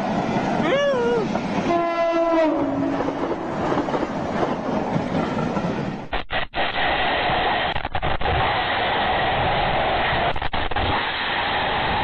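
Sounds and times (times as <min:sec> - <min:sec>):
passing train rumble: 0:00.0 - 0:06.1.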